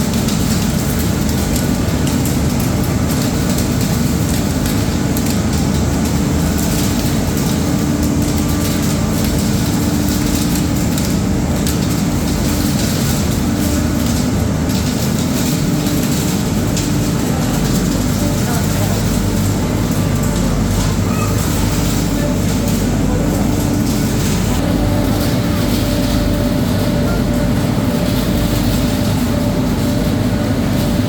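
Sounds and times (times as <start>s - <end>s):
mill machinery droning: 0.0s - 31.0s.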